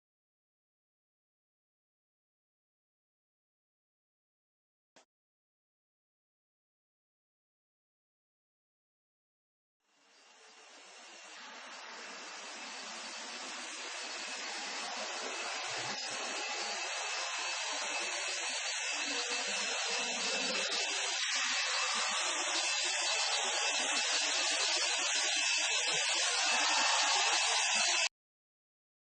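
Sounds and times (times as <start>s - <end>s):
machine hiss with high tone: 9.9s - 28.1s.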